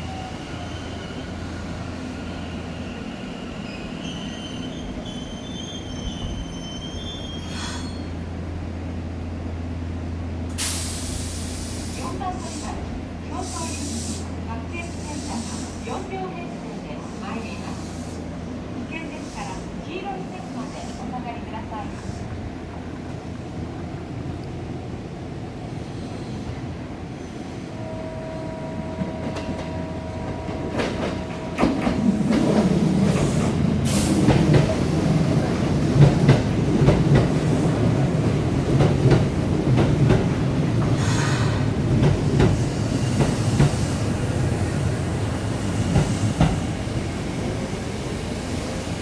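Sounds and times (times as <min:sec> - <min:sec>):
high-pitched brake screeches: 0:03.7 - 0:08.2
train rumble: 0:04.8 - 0:49.0.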